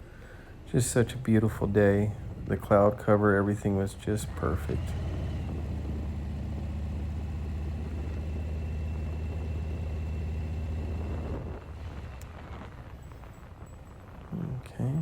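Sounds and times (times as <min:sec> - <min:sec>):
faint steady whine: 0:00.0 - 0:15.0
motorcycle engine running: 0:03.5 - 0:13.0.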